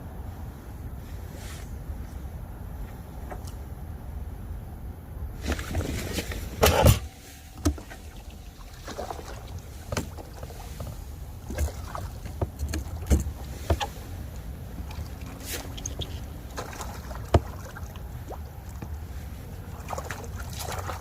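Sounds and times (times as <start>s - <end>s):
wind rumbling on microphone: 0.0s - 21.0s.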